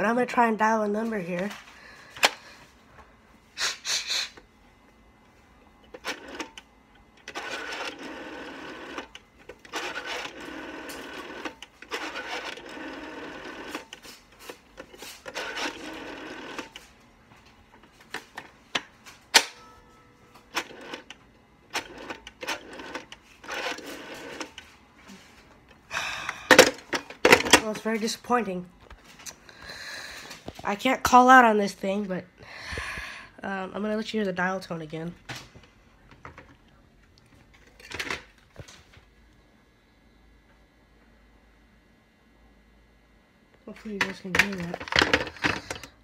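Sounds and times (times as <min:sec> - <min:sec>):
rotary telephone dial whirring: 0:05.8 - 0:16.9, 0:20.5 - 0:24.7, 0:44.0 - 0:46.0.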